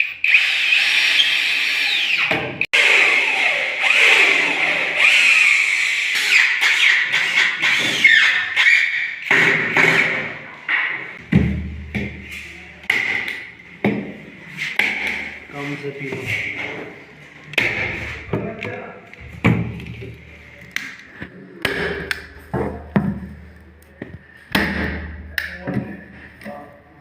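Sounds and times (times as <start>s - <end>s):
power drill motor whine: 0.0s - 6.0s.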